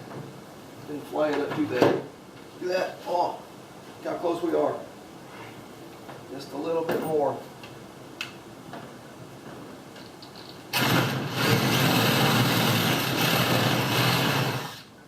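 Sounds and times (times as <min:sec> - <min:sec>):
electric drill boring into wood: 0:10.7 - 0:14.9.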